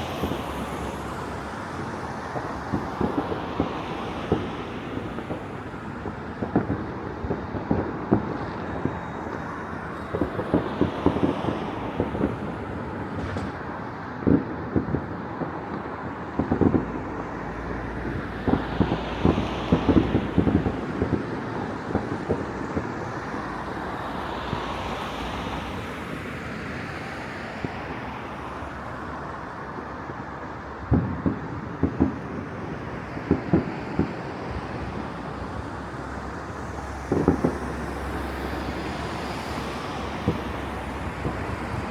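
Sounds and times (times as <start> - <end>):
city traffic rumble: 0.0 - 41.9
distant fireworks bangs: 1.8 - 23.5, 30.8 - 35.5, 36.8 - 41.9.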